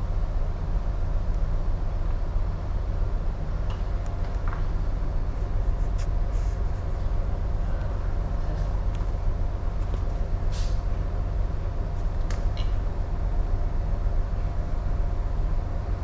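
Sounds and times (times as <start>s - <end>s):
faint steady hum: 0.0s - 16.0s
ship engine rumbling: 0.0s - 16.0s.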